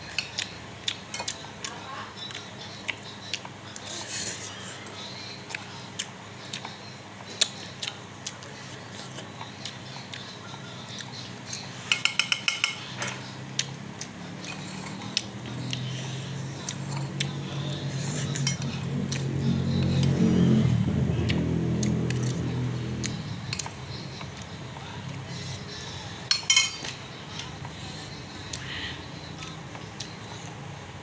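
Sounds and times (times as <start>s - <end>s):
cutlery clinking against a bowl: 0.1s - 4.3s, 10.9s - 13.8s, 14.4s - 19.2s, 23.4s - 24.5s, 25.8s - 27.8s.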